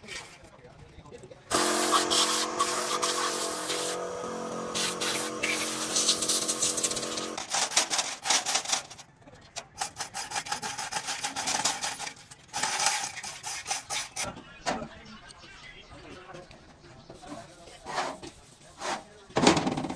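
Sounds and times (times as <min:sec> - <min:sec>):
steady hum: 0:01.5 - 0:07.5
quick scraping and rubbing strokes: 0:17.2 - 0:19.2.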